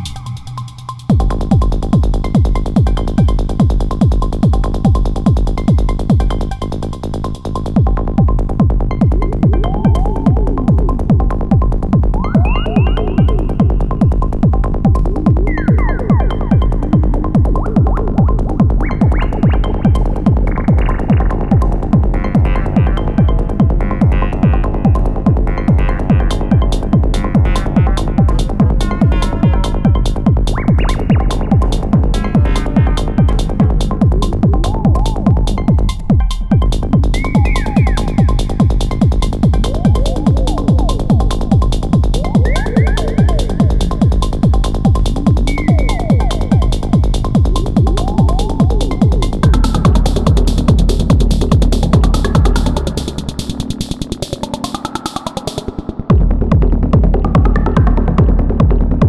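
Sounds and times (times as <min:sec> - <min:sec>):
rolling bassline: 0:00.0 - 0:59.0
kick drum beat: 0:01.1 - 0:07.0, 0:07.7 - 0:54.7, 0:56.1 - 0:59.0
gliding synth notes: 0:12.2 - 0:14.3, 0:15.0 - 0:23.5, 0:30.4 - 0:56.1.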